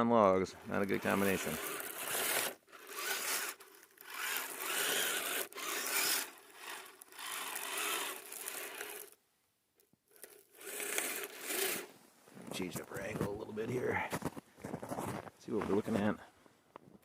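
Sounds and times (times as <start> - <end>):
plastic tracks scraping and clattering: 0.6 - 9.2, 10.1 - 16.2
small electric motors whirring: 0.6 - 9.2, 10.1 - 11.9.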